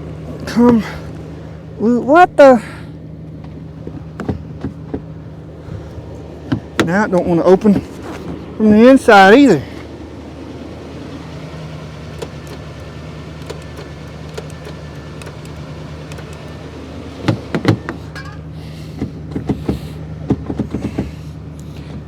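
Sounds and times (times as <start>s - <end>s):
truck engine idling: 0.0s - 22.0s
truck door latch clicking: 12.0s - 18.4s.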